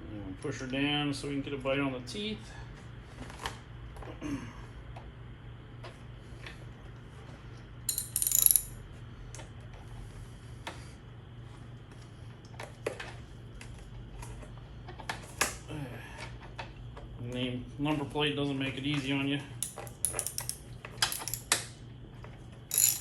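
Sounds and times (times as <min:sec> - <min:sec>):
loud metallic clatter: 0:19.6 - 0:21.5
light metal clicks and knocks: 0:19.6 - 0:21.6.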